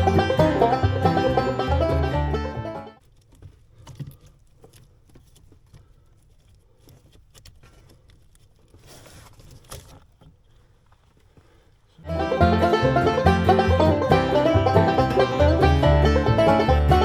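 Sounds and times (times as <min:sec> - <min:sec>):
faint clicks and knocks: 0:03.0 - 0:11.9.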